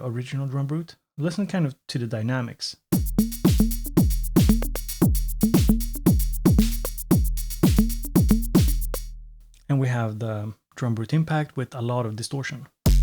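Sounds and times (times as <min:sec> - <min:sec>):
drum machine beat: 0:03.0 - 0:09.1.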